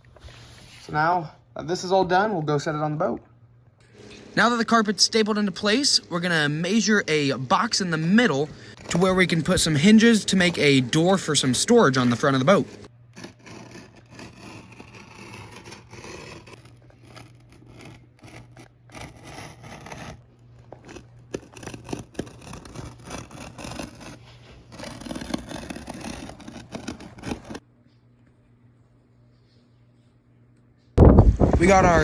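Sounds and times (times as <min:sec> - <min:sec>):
steady low hum: 0:00.6 - 0:32.0
carpet being cut by hand: 0:04.1 - 0:27.6.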